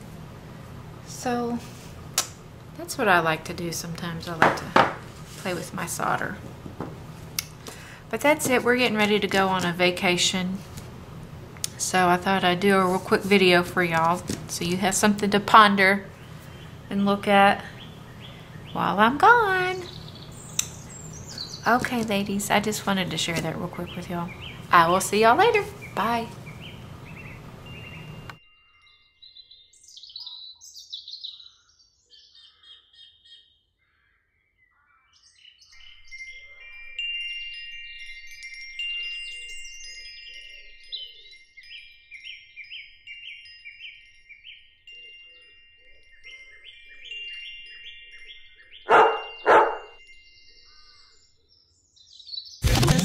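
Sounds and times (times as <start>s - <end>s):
chiming tones: 28.4s - 30.2s, 35.8s - 51.6s
rapid bird-like chirps: 29.2s - 37.0s, 39.1s - 52.8s.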